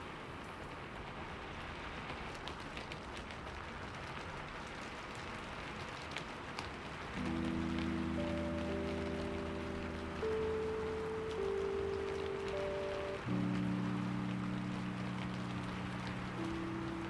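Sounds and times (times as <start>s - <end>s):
wood fire crackling: 0.6s - 17.0s
low music note: 7.2s - 17.0s.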